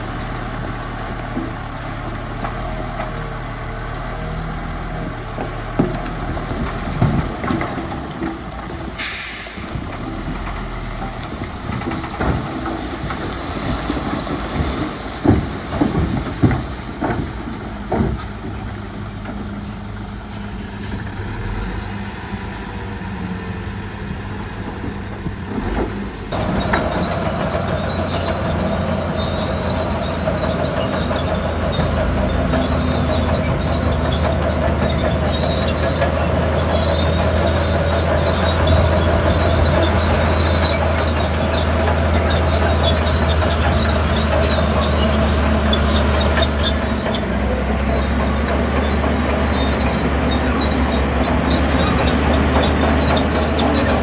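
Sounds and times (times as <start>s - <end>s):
bulldozer engine running: 0.0s - 54.0s
steel tracks clanking and squealing: 0.0s - 54.0s.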